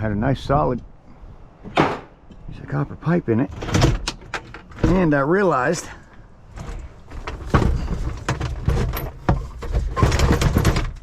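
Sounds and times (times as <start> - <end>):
metal scraping and clattering: 6.5 - 11.0
scrap metal clanking: 6.5 - 11.0.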